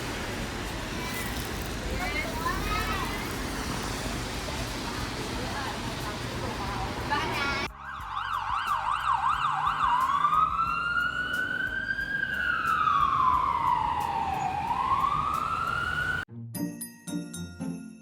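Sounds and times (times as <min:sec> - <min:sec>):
emergency vehicle siren: 0:03.7 - 0:16.3.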